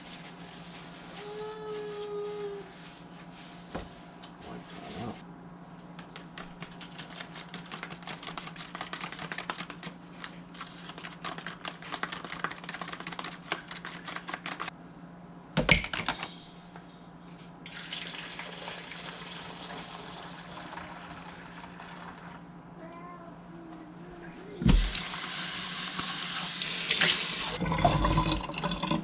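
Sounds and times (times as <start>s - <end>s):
water running from a tap: 17.7s - 22.3s, 24.7s - 29.0s.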